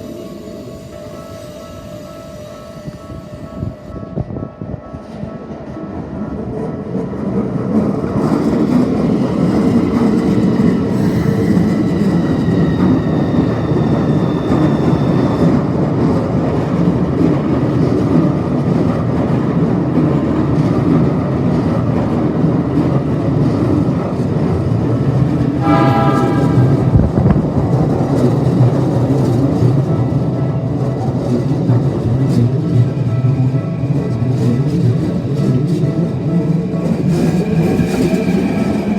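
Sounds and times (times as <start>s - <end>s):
electric train passing: 0.0s - 38.9s
train horn blast: 25.6s - 27.8s.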